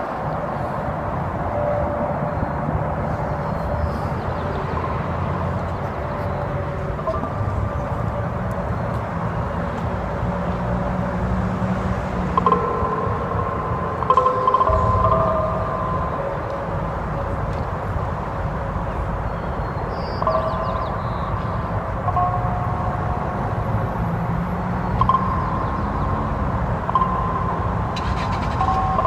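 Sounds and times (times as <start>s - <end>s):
low rumbling drone: 0.0s - 29.0s.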